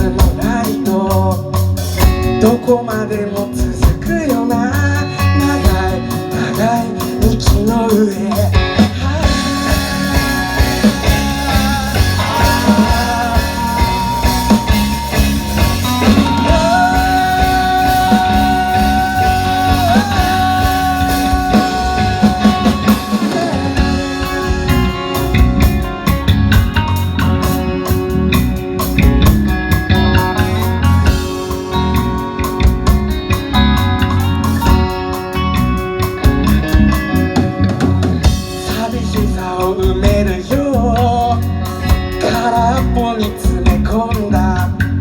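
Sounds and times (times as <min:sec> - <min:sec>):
person singing: 0:00.0 - 0:26.3, 0:38.2 - 0:41.6, 0:42.2 - 0:44.9
rock band music: 0:00.0 - 0:45.0.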